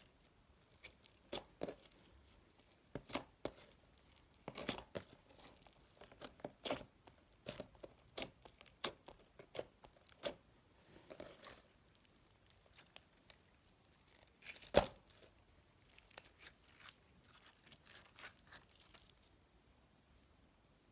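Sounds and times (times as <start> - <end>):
slime crackling and popping: 2.6 - 10.4, 11.2 - 19.3.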